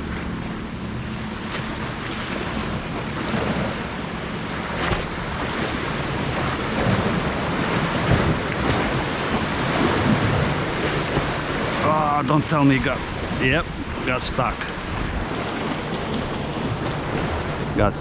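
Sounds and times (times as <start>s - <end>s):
ocean waves washing in: 0.0s - 18.0s
wind buffeting microphone: 4.5s - 18.0s.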